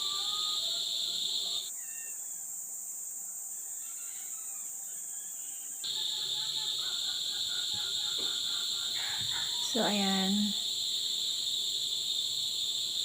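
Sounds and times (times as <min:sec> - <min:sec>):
insects chirring: 0:00.0 - 0:13.0
faint falling calls: 0:05.9 - 0:11.1.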